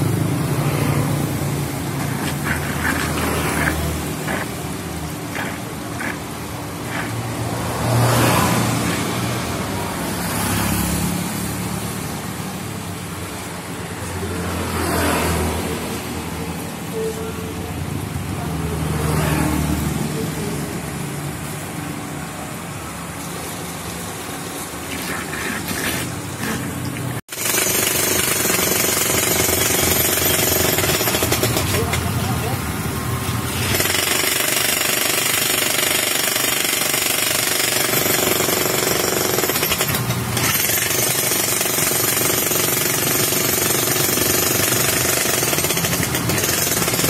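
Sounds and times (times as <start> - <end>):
vehicles passing: 0.0 - 27.3, 29.5 - 34.0.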